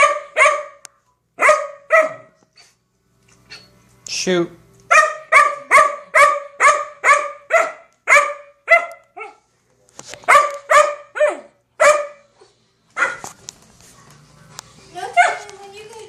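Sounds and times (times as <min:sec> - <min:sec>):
puppy barking: 0:00.0 - 0:02.7, 0:04.9 - 0:09.4, 0:10.2 - 0:12.3, 0:13.0 - 0:13.4, 0:15.1 - 0:15.5.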